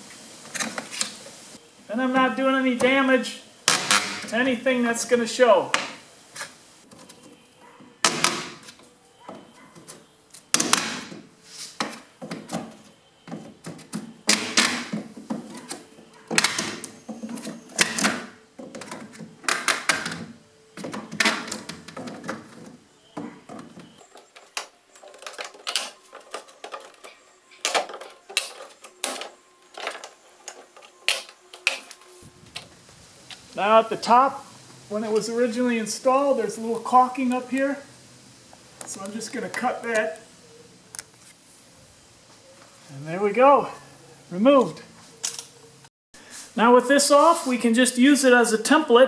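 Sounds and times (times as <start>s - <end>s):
pry bar prying nails: 24.0s - 32.3s.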